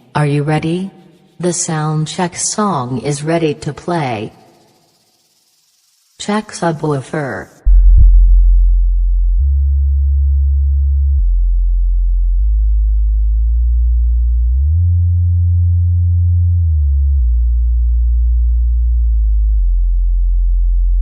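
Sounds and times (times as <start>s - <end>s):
deep bass sine tones: 7.6s - 21.0s.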